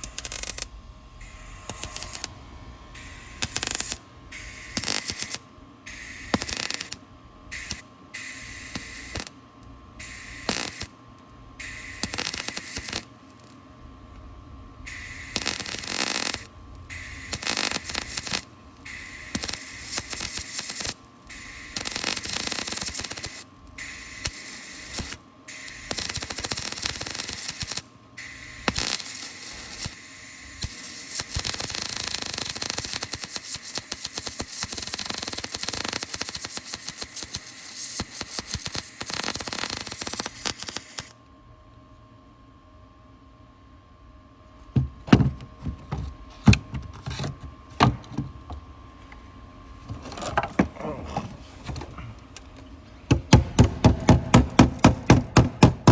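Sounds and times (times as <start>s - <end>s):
arc welder crackling: 0.0s - 2.4s, 3.0s - 9.4s, 10.0s - 13.6s, 14.9s - 41.2s, 49.8s - 55.9s
faint steady hum: 0.0s - 55.9s
knocks and clunks: 44.7s - 48.6s.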